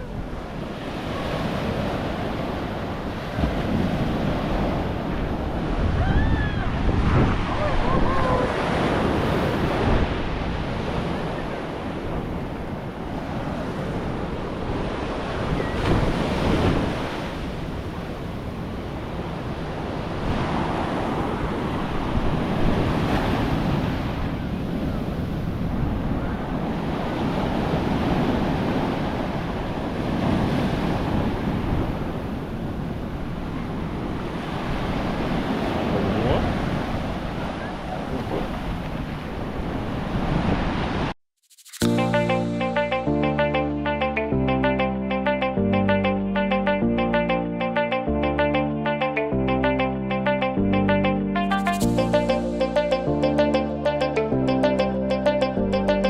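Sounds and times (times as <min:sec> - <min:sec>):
ocean waves washing onto beach: 0:00.0 - 0:42.6
wind buffeting microphone: 0:01.6 - 0:41.0.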